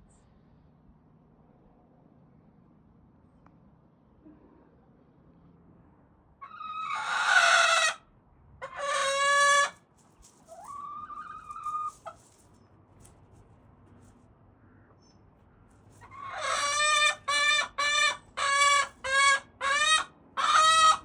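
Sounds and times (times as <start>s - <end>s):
hen calling loudly: 8.6s - 9.8s, 16.0s - 21.0s.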